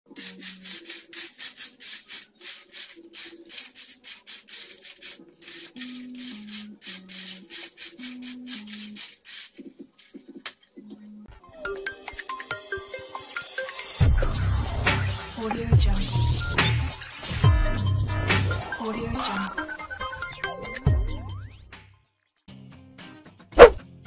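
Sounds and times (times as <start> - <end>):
hissy rubbing strokes: 0.1 - 10.2, 23.6 - 23.8.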